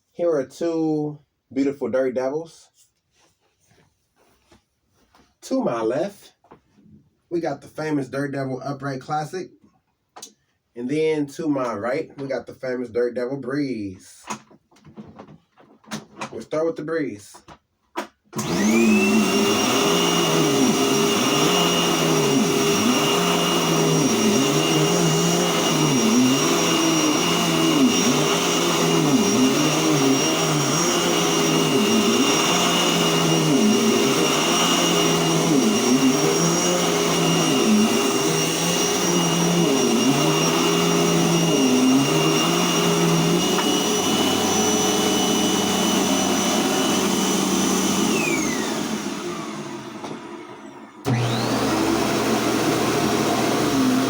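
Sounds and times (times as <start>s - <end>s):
vacuum cleaner motor whine: 18.4s - 54.0s.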